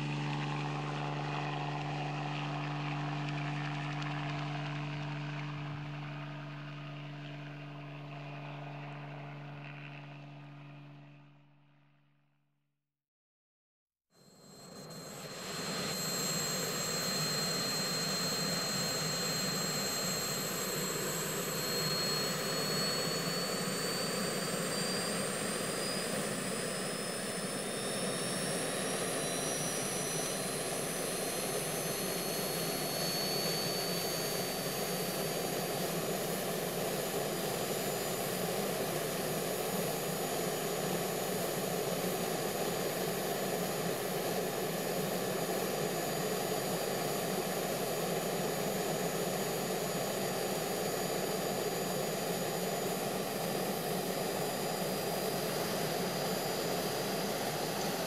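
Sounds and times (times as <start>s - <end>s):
jet turbine engine rushing: 15.0s - 58.0s.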